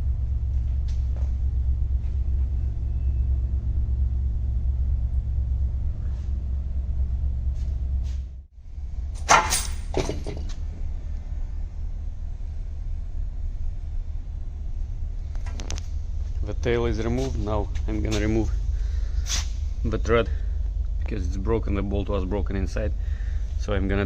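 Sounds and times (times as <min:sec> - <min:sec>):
steady low rumble: 0:00.0 - 0:24.0
motorcycle subframe clattering: 0:09.2 - 0:10.7.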